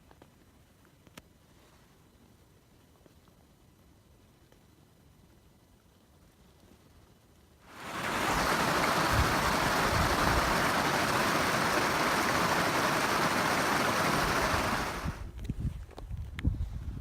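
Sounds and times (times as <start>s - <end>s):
water rushing: 7.6s - 15.2s.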